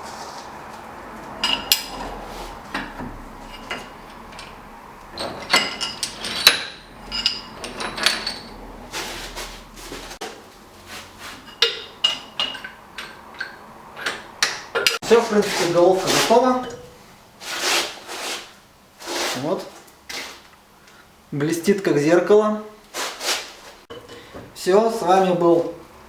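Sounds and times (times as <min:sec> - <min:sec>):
metal tools clinking and clattering: 0:01.4 - 0:09.4, 0:11.4 - 0:15.1.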